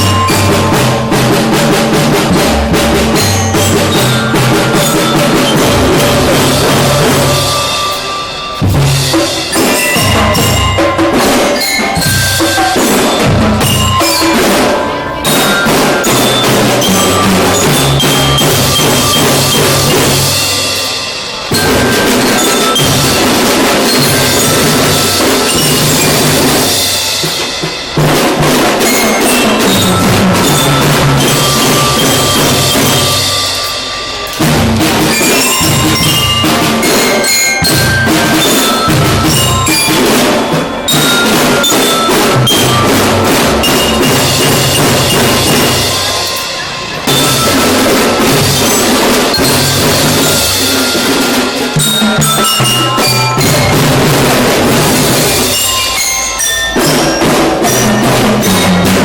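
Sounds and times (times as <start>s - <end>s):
bass and snare drums: 0.0s - 56.0s, 56.8s - 59.0s
glockenspiel melody: 0.0s - 59.0s.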